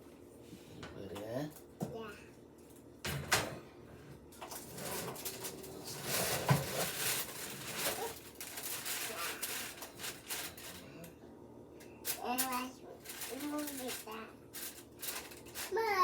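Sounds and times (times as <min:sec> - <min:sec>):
baking tray knocking and scraping: 0:05.8 - 0:07.0.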